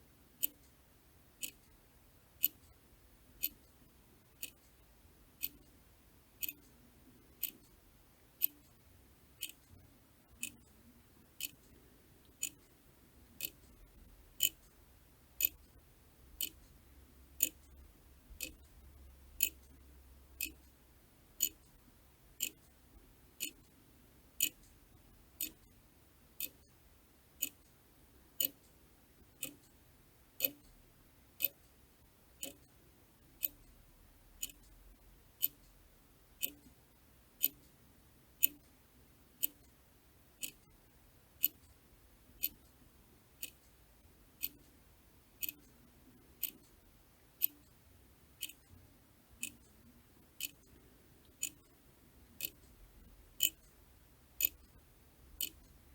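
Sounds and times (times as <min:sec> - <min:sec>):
clock ticking: 0:01.4 - 0:01.7, 0:02.4 - 0:03.8, 0:04.4 - 0:04.8, 0:05.4 - 0:05.7, 0:06.4 - 0:06.8, 0:07.4 - 0:07.8, 0:08.4 - 0:08.8, 0:09.4 - 0:10.7, 0:11.4 - 0:12.7, 0:13.3 - 0:14.8, 0:15.4 - 0:15.8, 0:16.4 - 0:16.8, 0:17.4 - 0:18.8, 0:19.4 - 0:19.8, 0:20.4 - 0:20.8, 0:21.4 - 0:21.8, 0:22.4 - 0:22.7, 0:23.4 - 0:23.8, 0:24.4 - 0:24.8, 0:25.4 - 0:25.8, 0:26.4 - 0:26.8, 0:27.4 - 0:27.7, 0:28.3 - 0:29.8, 0:30.4 - 0:30.8, 0:31.4 - 0:31.8, 0:32.4 - 0:32.8, 0:33.4 - 0:33.8, 0:34.4 - 0:35.8, 0:36.4 - 0:36.8, 0:37.4 - 0:37.8, 0:38.4 - 0:38.8, 0:39.4 - 0:39.8, 0:40.4 - 0:40.8, 0:41.4 - 0:42.8, 0:43.4 - 0:43.8, 0:44.4 - 0:44.8, 0:45.4 - 0:45.8, 0:46.4 - 0:46.8, 0:47.4 - 0:47.8, 0:48.4 - 0:48.8, 0:49.4 - 0:49.8, 0:50.4 - 0:53.8, 0:54.4 - 0:55.9.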